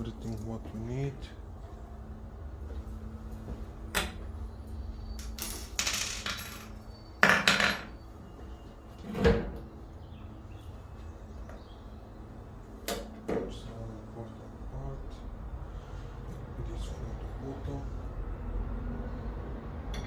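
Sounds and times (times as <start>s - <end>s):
tools clinking and knocking: 5.2s - 8.0s.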